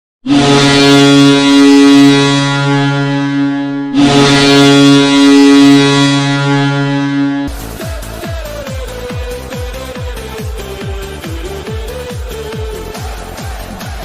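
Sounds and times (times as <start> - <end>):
goal horn blasts: 0.2 - 7.7.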